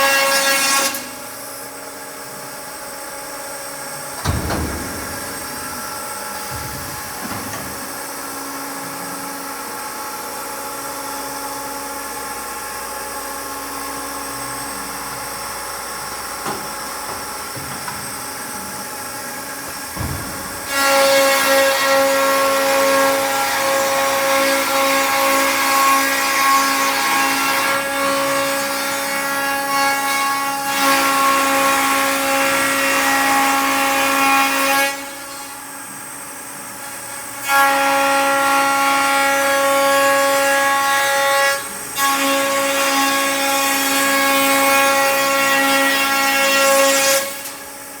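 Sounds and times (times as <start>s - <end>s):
machine hum: 2.3s - 25.4s.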